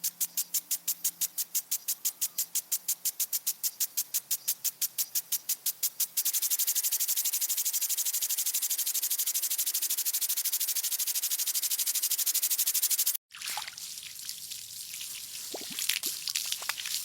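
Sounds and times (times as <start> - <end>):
impact sprinkler ticking: 14.0 - 17.0.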